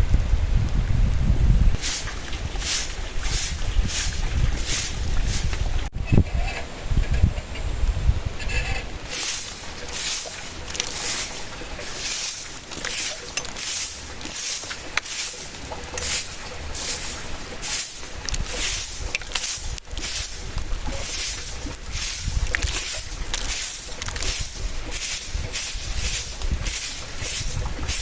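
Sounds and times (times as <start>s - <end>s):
strong wind gusts: 0.0s - 9.1s.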